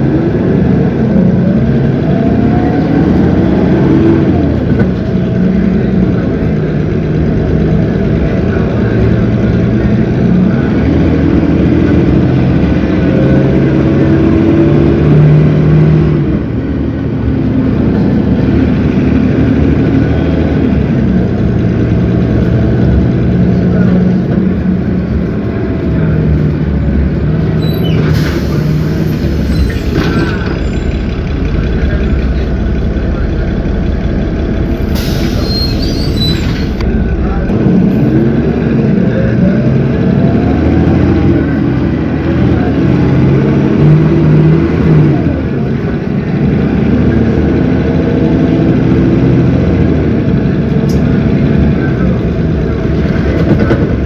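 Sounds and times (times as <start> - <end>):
bus diesel engine running: 0.0 - 54.0
air brake hiss: 34.8 - 36.6.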